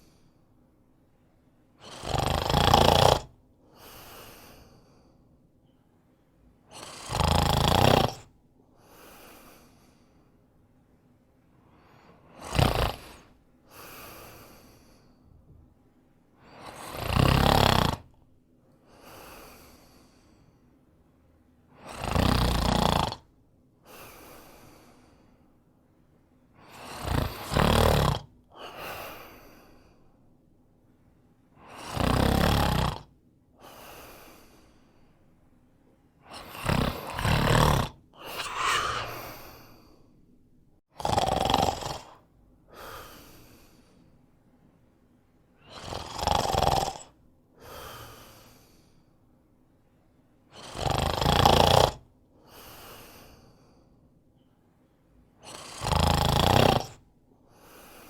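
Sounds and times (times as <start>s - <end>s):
man snoring: 1.8s - 4.4s, 6.7s - 8.3s, 12.3s - 14.8s, 16.6s - 18.2s, 21.8s - 23.3s, 26.7s - 28.3s, 31.6s - 33.1s, 36.2s - 39.9s, 40.9s - 42.2s, 45.6s - 48.3s, 50.6s - 52.0s, 55.4s - 57.0s.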